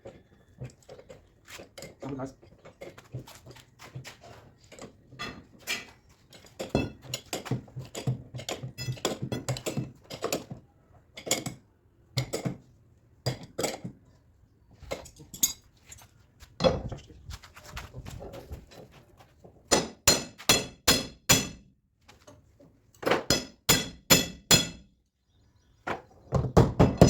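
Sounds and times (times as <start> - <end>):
metal tools clinking: 14.9 - 16.1.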